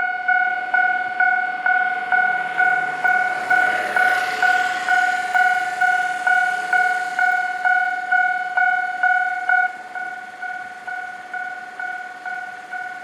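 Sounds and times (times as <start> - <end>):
level-crossing warning bell: 0.0 - 13.0
rushing noise: 0.5 - 9.9.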